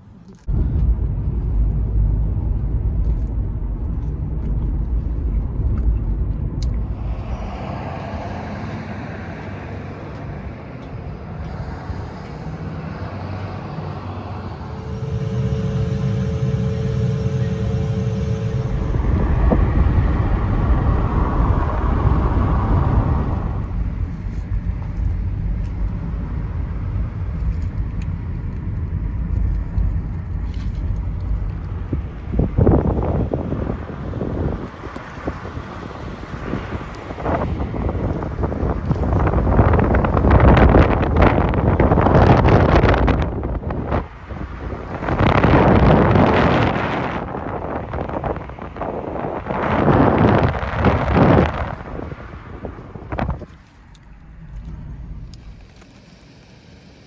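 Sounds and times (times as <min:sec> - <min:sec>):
vehicle engine and road noise: 0:00.0 - 0:57.0
brief steady hum: 0:13.6 - 0:23.8.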